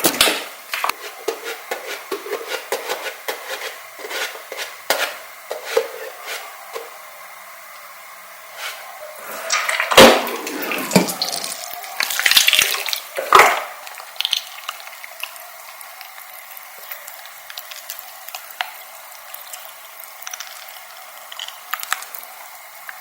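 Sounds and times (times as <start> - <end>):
wet slime squelching: 8.7 - 23.0
slime popping and crackling: 11.0 - 22.4.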